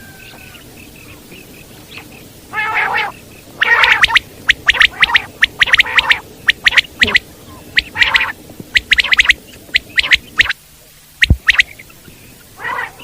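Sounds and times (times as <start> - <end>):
quail calling: 2.0 - 10.6, 11.2 - 13.0.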